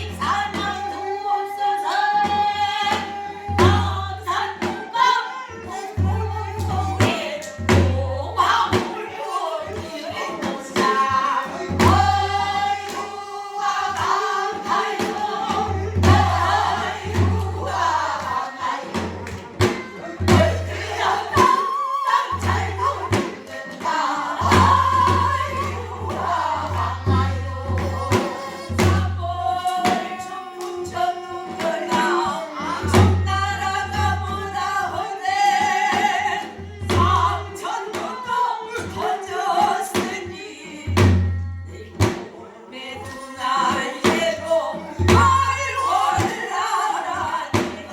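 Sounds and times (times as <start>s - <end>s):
folk singing with vibrato: 0.0s - 47.9s
drum strikes: 10.4s - 30.2s, 40.9s - 42.4s, 43.6s - 46.6s, 47.2s - 47.9s.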